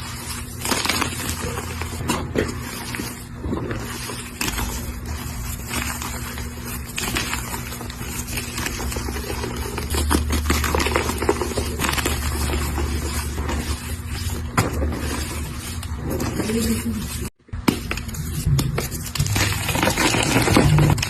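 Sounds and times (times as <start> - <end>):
chalk block being crushed: 17.6 - 21.0.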